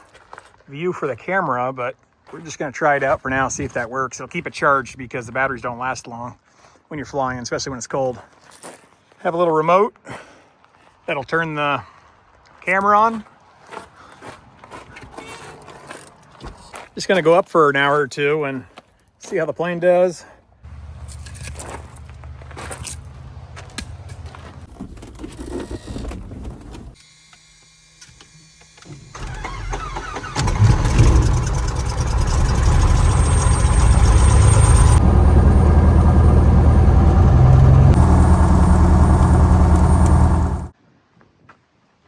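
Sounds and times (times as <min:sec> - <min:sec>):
piston aircraft engine running: 0:28.8 - 0:40.7.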